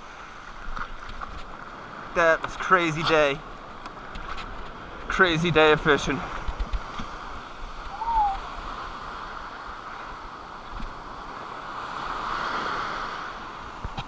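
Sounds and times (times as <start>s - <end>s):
ocean surf breaking: 0.0s - 14.0s
short chirp: 7.9s - 8.5s.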